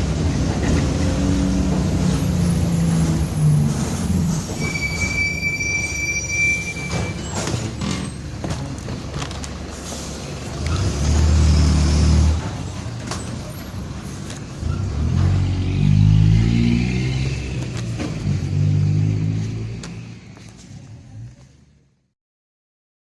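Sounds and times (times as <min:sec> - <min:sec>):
bus body rattling: 0:00.0 - 0:15.4
diesel bus engine under load: 0:00.0 - 0:22.0.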